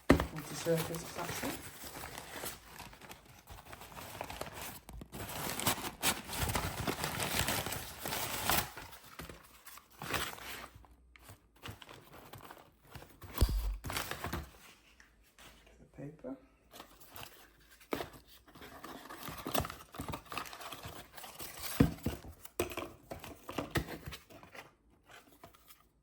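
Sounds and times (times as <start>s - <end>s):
paper packaging crinkling and tearing: 0.3s - 10.8s
sharp thump: 13.4s - 14.0s.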